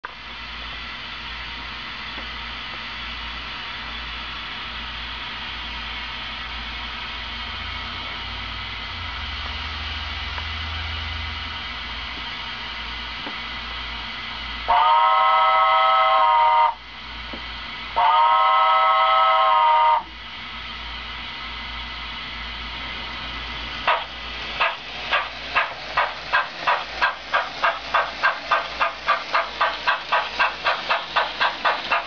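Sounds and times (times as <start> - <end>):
steam whistle blasts from small speaker: 14.7 - 16.8, 18.0 - 20.1
steady hiss: 19.7 - 32.0.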